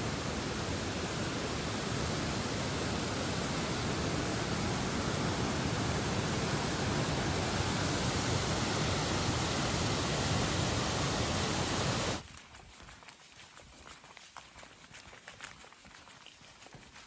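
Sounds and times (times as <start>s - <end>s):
waterfall roaring: 0.0s - 12.2s.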